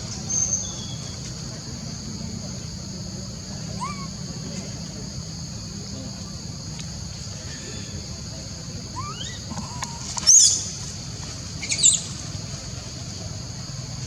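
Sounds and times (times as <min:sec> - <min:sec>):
monkey shrieking: 0:03.8 - 0:04.2, 0:09.0 - 0:10.1.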